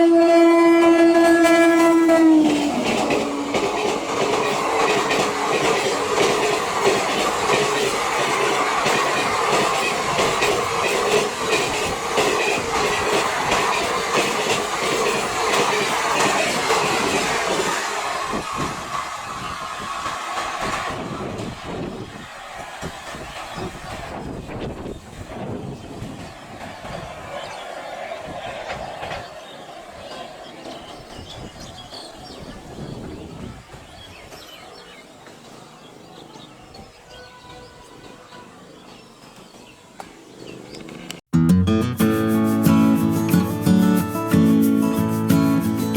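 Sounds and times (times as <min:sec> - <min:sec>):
train rumble: 0:00.0 - 0:41.2
train wheels clattering: 0:00.7 - 0:41.2.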